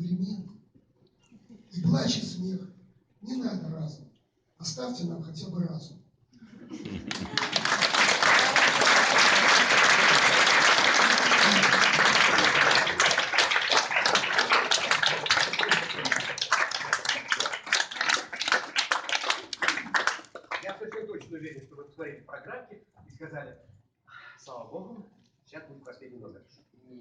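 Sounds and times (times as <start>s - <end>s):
audience applauding: 6.8s - 21.1s.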